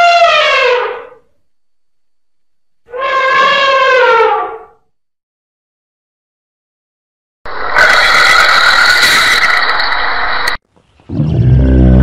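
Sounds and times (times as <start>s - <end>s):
elephant trumpeting: 2.9s - 4.7s.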